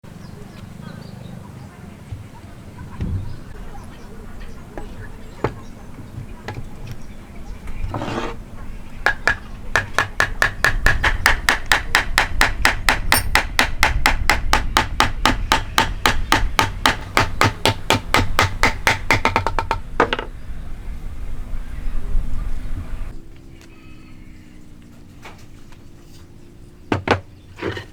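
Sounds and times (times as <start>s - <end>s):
hammer striking with ringing tone: 13.1s - 16.2s.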